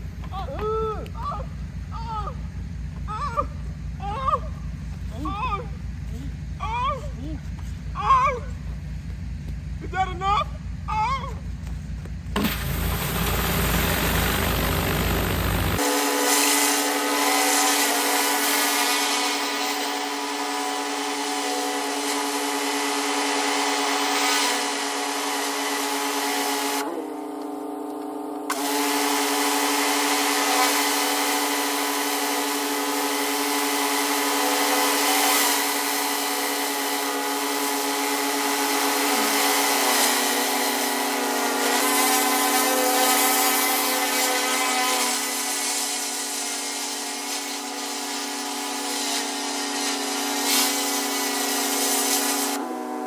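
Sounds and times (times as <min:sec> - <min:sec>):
pressure washer pump humming: 0:00.0 - 0:53.0
water spray hitting concrete: 0:12.3 - 0:19.8, 0:31.8 - 0:52.6.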